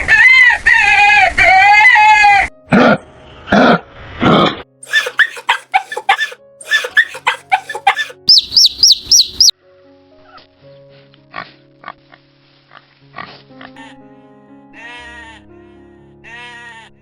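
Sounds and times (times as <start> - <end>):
light background music: 1.0 - 17.0
animal calls: 4.4 - 9.5
short chirping calls: 4.9 - 9.5
high rising whistled chirps: 7.6 - 9.5.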